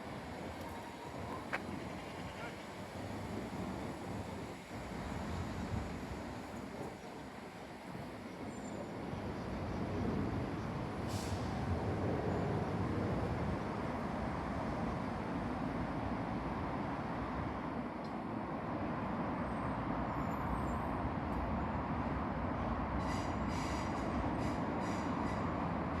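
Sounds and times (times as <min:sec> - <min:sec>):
train wheels rumbling on track: 0:21.1 - 0:26.0.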